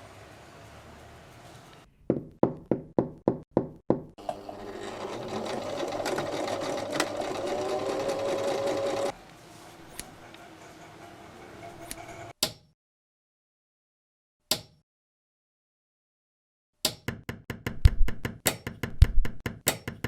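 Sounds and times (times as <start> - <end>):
sewing machine stitching leather: 4.2 - 9.1.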